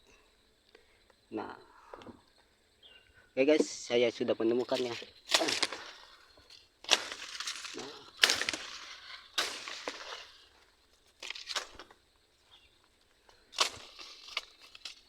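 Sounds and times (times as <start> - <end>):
twigs snapping: 4.6 - 15.0.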